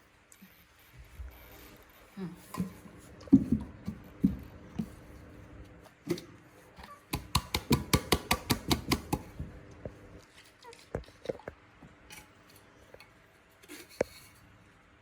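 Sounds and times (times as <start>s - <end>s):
sharp clicks and taps: 7.1s - 10.0s.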